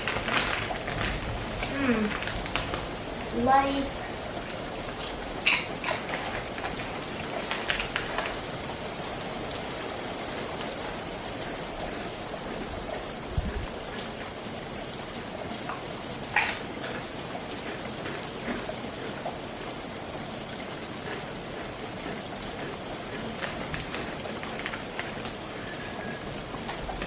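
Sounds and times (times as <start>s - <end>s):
sharp crackles: 0.0s - 12.1s, 22.0s - 27.0s
steady rain: 0.0s - 27.0s.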